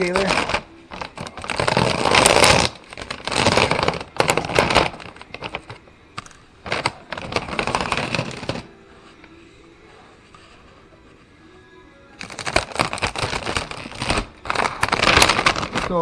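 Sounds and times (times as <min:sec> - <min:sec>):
bag of bird seed rustling: 0:00.0 - 0:05.8, 0:06.6 - 0:08.7, 0:12.2 - 0:16.0.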